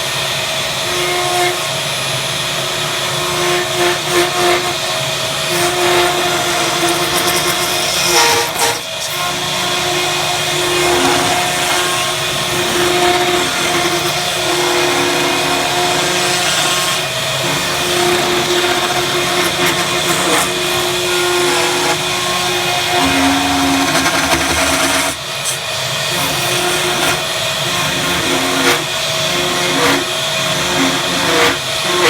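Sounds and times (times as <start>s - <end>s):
power tool motor whine: 0.0s - 32.0s.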